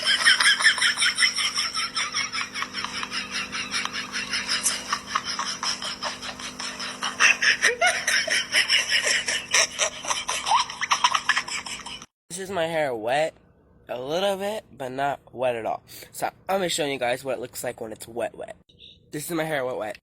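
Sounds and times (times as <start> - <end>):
person laughing hard: 0.0 - 12.1.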